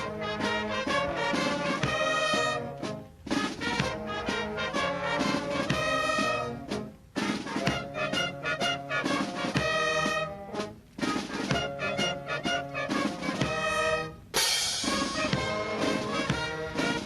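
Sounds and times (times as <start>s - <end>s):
brass chords: 0.0s - 17.0s
cymbal crash: 14.4s - 15.3s.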